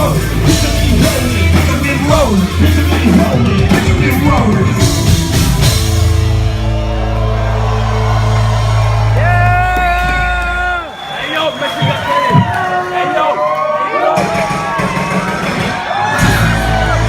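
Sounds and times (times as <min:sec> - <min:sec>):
live rock band music: 0:00.0 - 0:10.4, 0:14.1 - 0:17.0.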